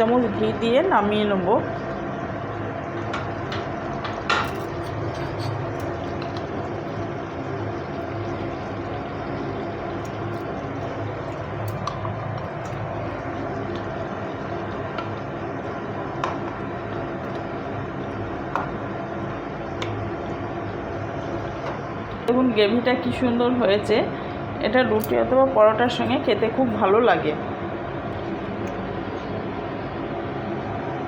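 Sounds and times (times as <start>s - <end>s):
steady hum: 0.0s - 31.0s
gravy bubbling in a pan: 4.9s - 22.2s.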